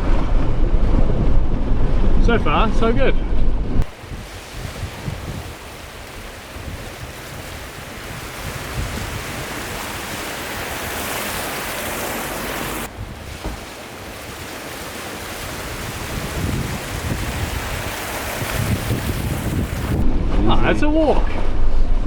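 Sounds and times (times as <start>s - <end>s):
water rushing around vehicle: 3.8s - 20.1s.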